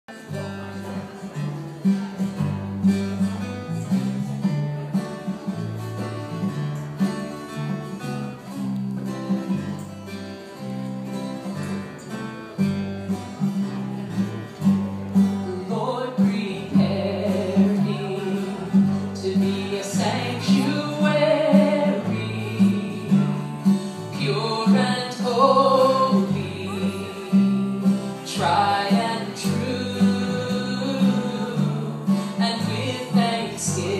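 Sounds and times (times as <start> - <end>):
guitar playing: 0.1 - 33.9
person singing: 15.4 - 33.9.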